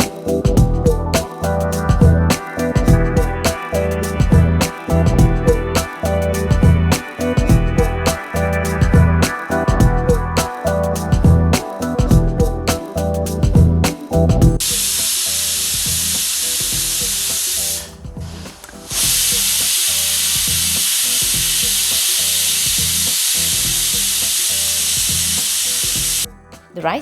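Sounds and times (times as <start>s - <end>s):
music: 0.0s - 27.0s
pressure cooker whistle hissing: 14.6s - 17.9s, 18.9s - 26.3s.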